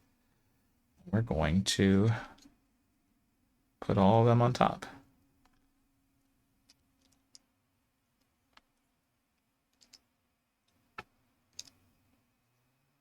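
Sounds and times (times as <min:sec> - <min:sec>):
plastic bricks clicking: 0:09.7 - 0:11.8.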